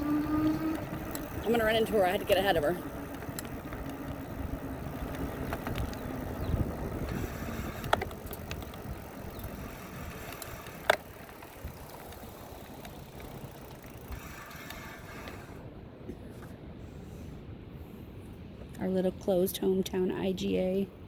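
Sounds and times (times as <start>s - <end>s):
road and wind noise: 0.0s - 21.0s
rattling clicks: 0.2s - 15.6s.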